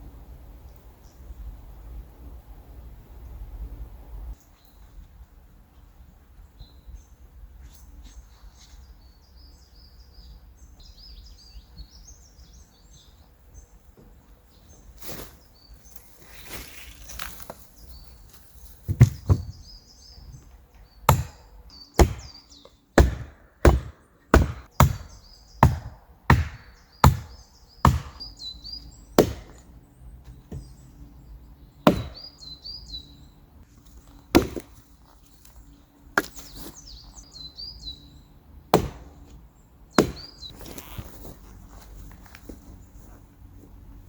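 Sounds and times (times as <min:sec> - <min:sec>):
small birds chirping: 0:04.4 - 0:23.1, 0:24.0 - 0:44.0
axe chopping firewood: 0:18.9 - 0:19.5, 0:21.1 - 0:22.4, 0:23.0 - 0:28.3, 0:29.2 - 0:29.7, 0:31.8 - 0:32.2, 0:34.3 - 0:34.8, 0:36.2 - 0:36.7, 0:38.7 - 0:39.4, 0:40.0 - 0:40.5.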